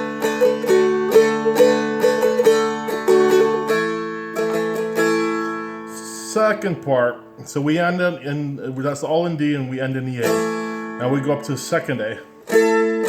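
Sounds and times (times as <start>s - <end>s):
stick dulcimer picked melody: 0.0s - 6.0s, 10.2s - 13.0s.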